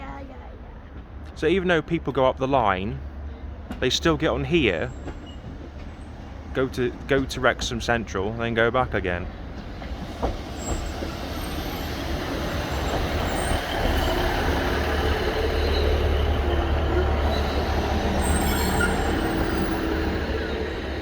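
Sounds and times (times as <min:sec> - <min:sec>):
diesel train rumbling: 0:00.0 - 0:21.0
wheel squeals: 0:04.9 - 0:05.6, 0:10.0 - 0:21.0.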